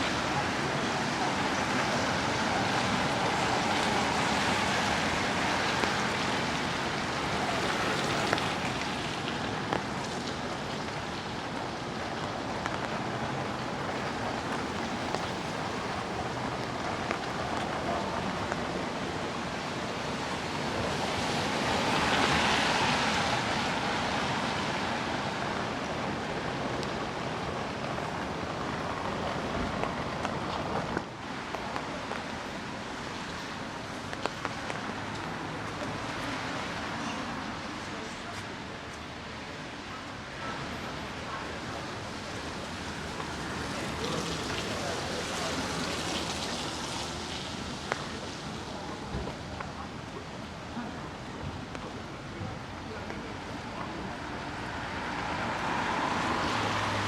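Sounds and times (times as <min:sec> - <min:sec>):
wet street noise: 0:00.0 - 0:57.0
rain hissing: 0:00.5 - 0:11.2, 0:13.4 - 0:18.3, 0:40.9 - 0:48.8.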